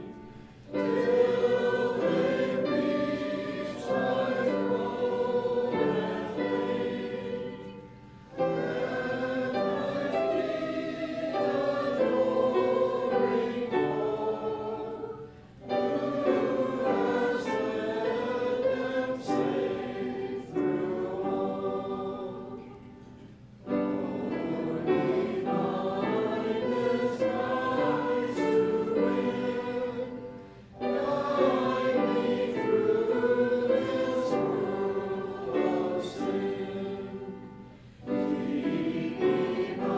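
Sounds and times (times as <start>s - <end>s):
group singing a hymn: 0.0s - 39.9s.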